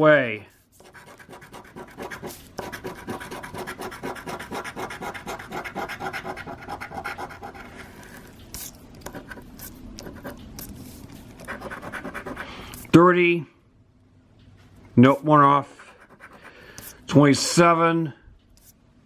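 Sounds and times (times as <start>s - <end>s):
scratch card being scraped: 0.8s - 12.9s.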